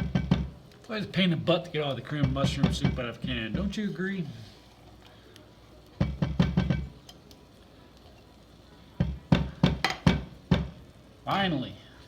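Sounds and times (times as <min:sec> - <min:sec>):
can knocking against a pan: 0:00.0 - 0:00.6, 0:02.2 - 0:03.8, 0:06.0 - 0:07.0, 0:09.0 - 0:10.8.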